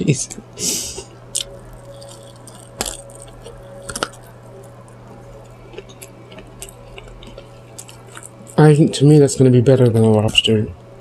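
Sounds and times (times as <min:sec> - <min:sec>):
low hum: 0:00.0 - 0:11.0
crunchy bites of fried chicken: 0:01.0 - 0:08.7.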